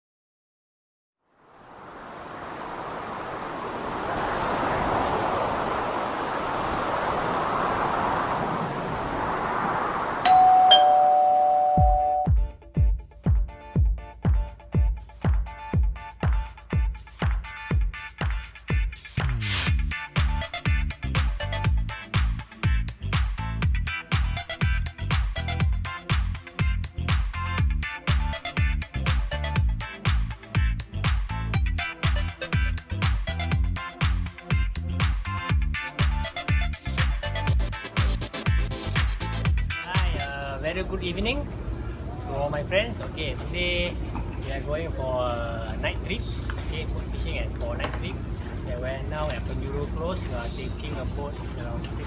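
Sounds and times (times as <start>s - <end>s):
steady rushing noise: 1.5s - 10.3s
two-note ding-dong chime: 10.3s - 12.3s
pounding kick drum: 11.8s - 40.2s
music with thumping bass beat: 11.8s - 40.4s.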